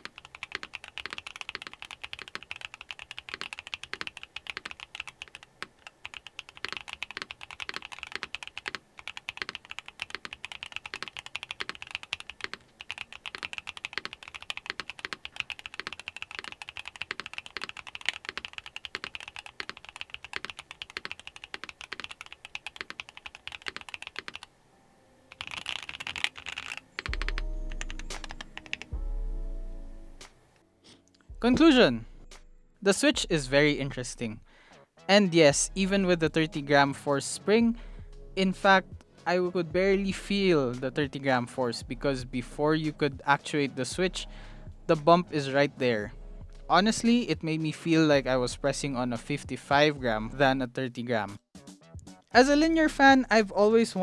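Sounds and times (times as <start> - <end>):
mechanical keyboard typing: 0.0 - 24.5, 25.3 - 29.0
music with low bass: 27.1 - 28.4, 35.5 - 36.7, 39.7 - 40.9, 46.0 - 47.0.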